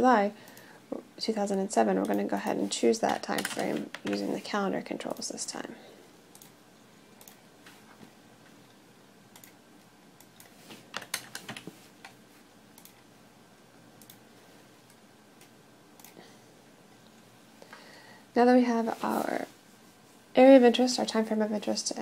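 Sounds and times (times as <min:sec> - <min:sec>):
computer clicks: 0:03.1 - 0:04.3, 0:06.3 - 0:06.6, 0:07.2 - 0:07.4, 0:09.3 - 0:09.6, 0:10.2 - 0:13.0, 0:14.0 - 0:14.2, 0:14.8 - 0:16.2.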